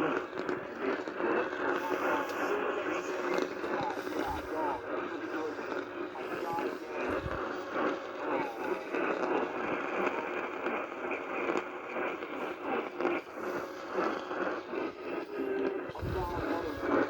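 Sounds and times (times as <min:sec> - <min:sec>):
radio static hiss and crackles: 0:00.0 - 0:17.0.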